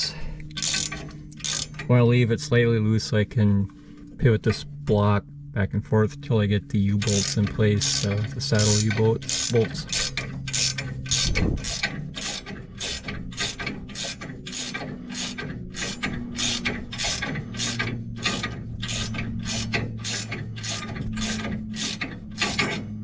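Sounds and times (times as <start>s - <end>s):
ratchet wrench clicking: 0.5s - 1.9s, 7.0s - 22.8s.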